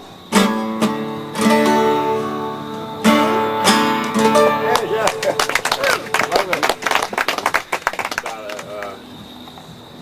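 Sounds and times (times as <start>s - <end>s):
acoustic guitar strumming chords: 0.0s - 7.8s.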